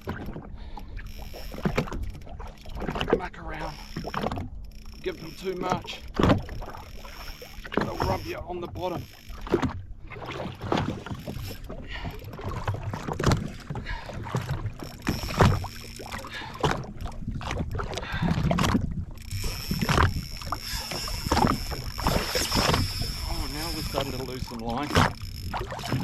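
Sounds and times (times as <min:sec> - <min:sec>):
fishing reel whine: 0:00.0 - 0:26.0
water splashing against hull: 0:00.0 - 0:26.0
wind on microphone: 0:17.2 - 0:26.0
faint steady hum: 0:18.8 - 0:25.8.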